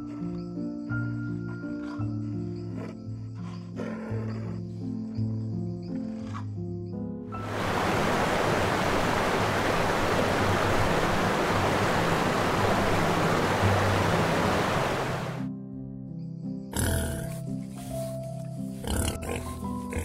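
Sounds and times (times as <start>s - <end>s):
loud rushing hiss: 7.4s - 15.4s
background music: 10.4s - 20.0s.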